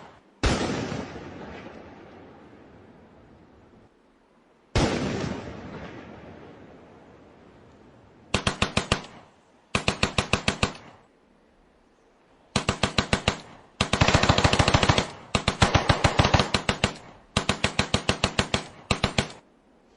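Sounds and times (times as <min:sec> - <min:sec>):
automatic gunfire bursts: 0:08.3 - 0:10.9, 0:12.5 - 0:19.4.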